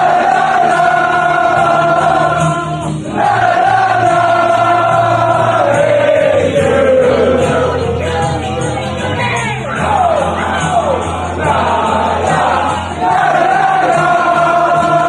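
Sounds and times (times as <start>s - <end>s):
crowd of fans chanting: 0.0s - 8.0s, 9.8s - 15.0s.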